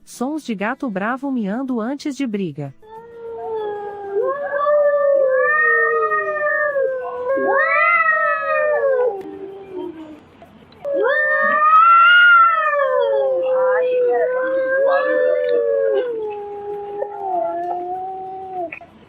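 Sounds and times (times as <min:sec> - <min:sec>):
angry cat yowling: 0:03.0 - 0:10.2, 0:10.8 - 0:18.8.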